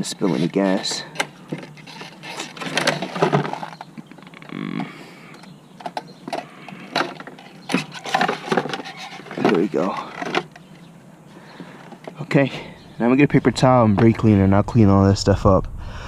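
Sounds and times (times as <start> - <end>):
plastic fuel pump clicking and rattling: 1.1 - 10.8.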